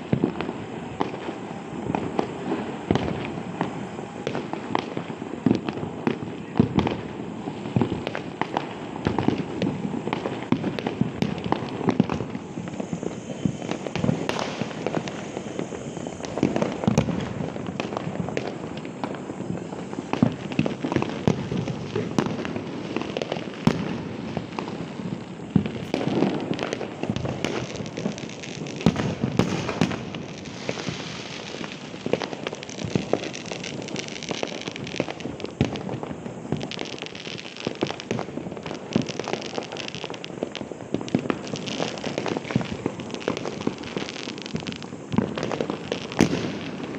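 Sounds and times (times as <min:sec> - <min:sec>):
firecrackers popping: 0:00.0 - 0:46.9
loud firecracker bangs: 0:20.1 - 0:35.0, 0:41.1 - 0:46.9.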